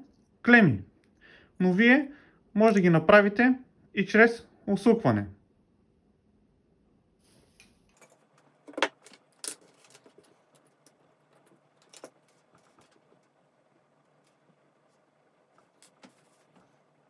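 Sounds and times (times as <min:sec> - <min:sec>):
small electrical parts rattling: 0:07.5 - 0:13.4.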